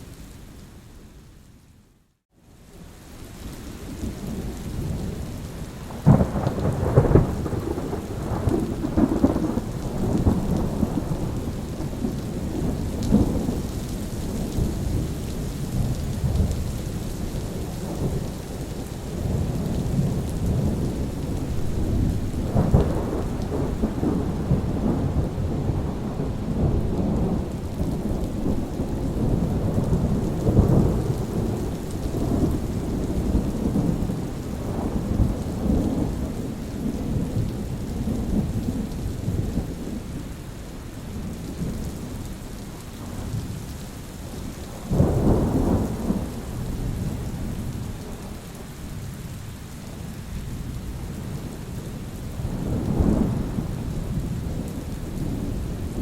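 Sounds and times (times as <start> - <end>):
steady rain: 0.0 - 56.0
thunder rolling: 19.2 - 37.4.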